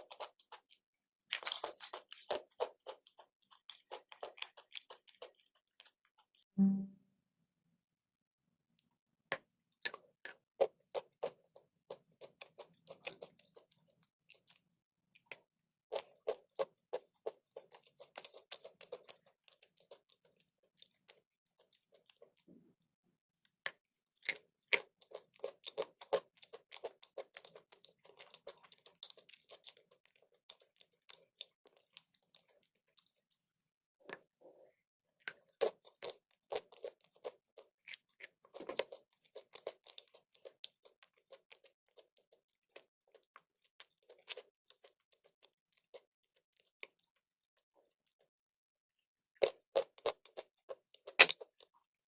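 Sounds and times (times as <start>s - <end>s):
person chewing crunchy chalk: 0.0s - 6.4s, 9.7s - 22.5s, 23.4s - 48.3s, 49.2s - 52.0s.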